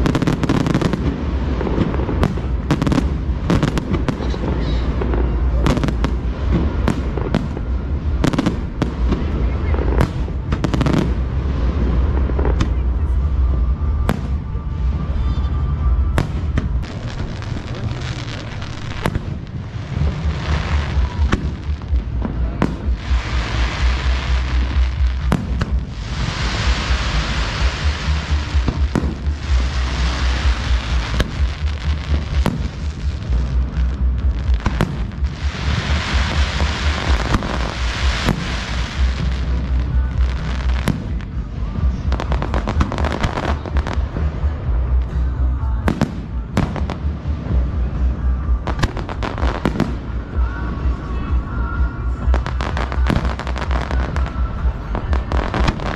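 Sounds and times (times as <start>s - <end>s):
fireworks bangs: 0.0s - 55.9s
fireworks crackling: 0.0s - 55.9s
low rumble: 0.0s - 55.9s.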